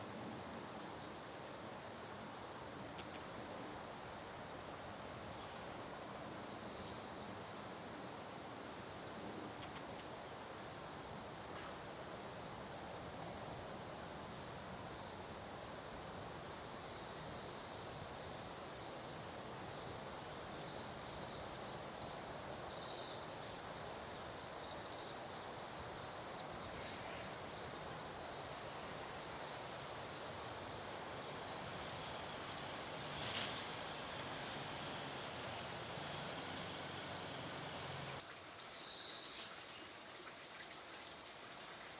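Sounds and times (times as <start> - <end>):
outdoor background hiss: 0.0 - 41.9
small birds chirping: 27.9 - 38.2.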